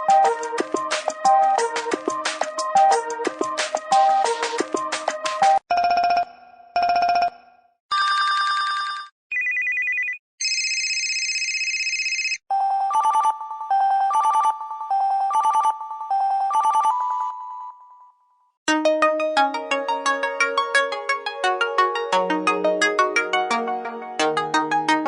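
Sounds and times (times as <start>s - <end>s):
phone ringtones: 7.9s - 17.8s.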